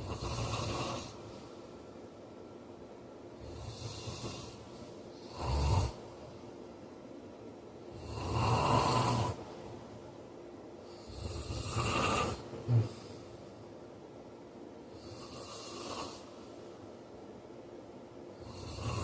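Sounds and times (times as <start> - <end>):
man snoring: 0.0 - 1.2, 3.4 - 6.0, 7.9 - 9.4, 10.9 - 13.2, 14.9 - 16.3, 18.4 - 19.0.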